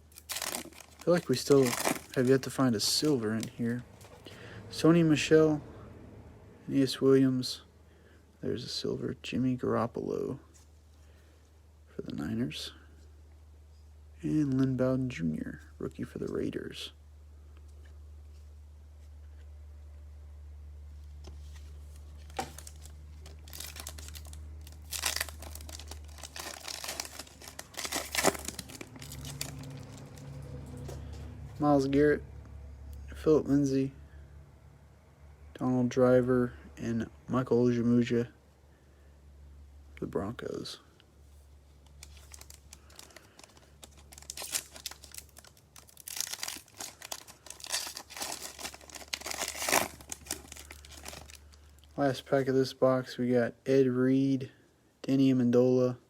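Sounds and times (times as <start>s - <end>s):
foil wrapper tearing and crinkling: 0.0s - 3.5s, 22.2s - 30.2s, 42.0s - 51.6s.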